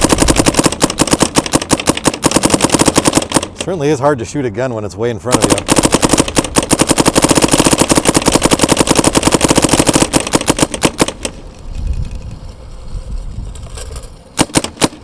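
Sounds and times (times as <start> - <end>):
paintball marker firing shots: 0.0 - 3.8, 5.3 - 11.4, 14.4 - 15.0.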